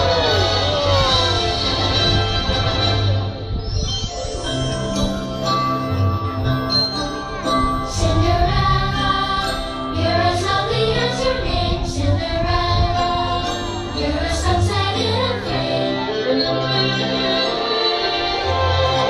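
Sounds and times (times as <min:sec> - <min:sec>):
orchestral music over loudspeakers: 0:00.0 - 0:19.0.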